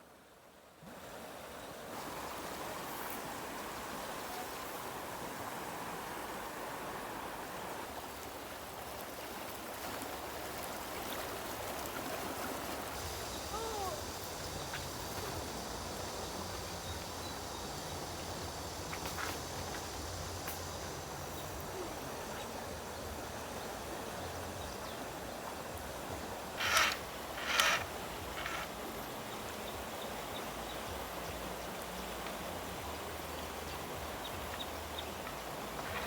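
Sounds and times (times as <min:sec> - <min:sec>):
outdoor background noise: 0:00.0 - 0:36.0
short noisy sounds: 0:26.6 - 0:28.7.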